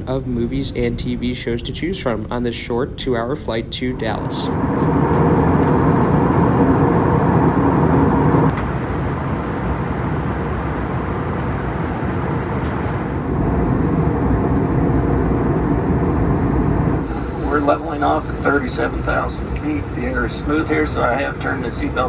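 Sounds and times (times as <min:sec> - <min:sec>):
airliner cabin airflow and engine: 0:03.7 - 0:22.0.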